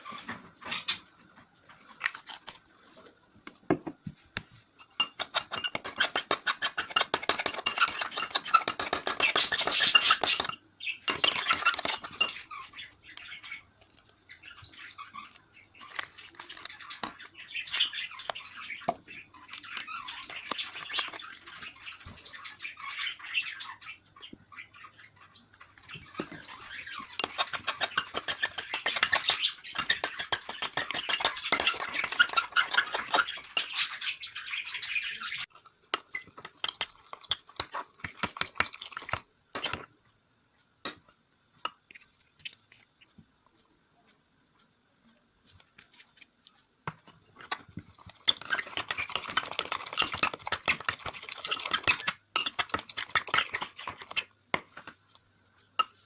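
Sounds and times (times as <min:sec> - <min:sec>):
slime being stirred: 0:01.7 - 0:22.3, 0:25.7 - 0:33.9, 0:35.5 - 0:39.9, 0:45.4 - 0:56.0
utensil clicking and scraping bowl: 0:04.8 - 0:21.9, 0:25.6 - 0:34.0, 0:35.5 - 0:39.9, 0:45.6 - 0:56.0.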